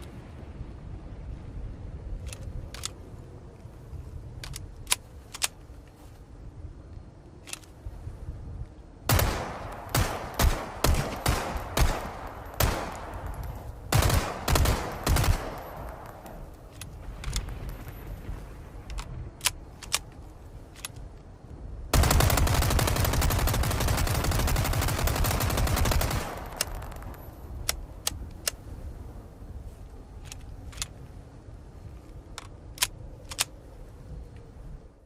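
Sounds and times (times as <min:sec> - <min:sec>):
sharp gun clicks: 0:02.2 - 0:03.0, 0:04.4 - 0:05.6, 0:09.1 - 0:17.9, 0:18.8 - 0:21.1, 0:26.1 - 0:28.6, 0:32.3 - 0:33.6
submachine gun automatic fire: 0:22.0 - 0:27.0.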